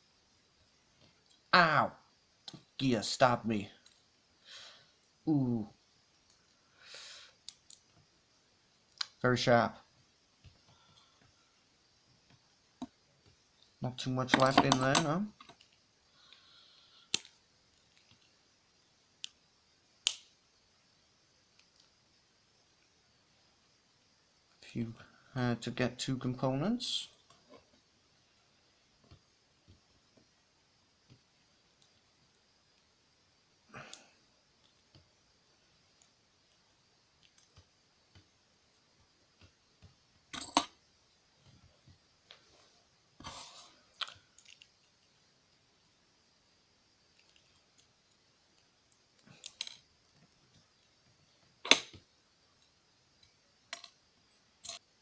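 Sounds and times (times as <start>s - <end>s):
small tools clicking and tapping: 14.3s - 15.8s, 39.4s - 40.7s, 48.9s - 49.9s, 52.6s - 54.0s, 54.6s - 54.8s.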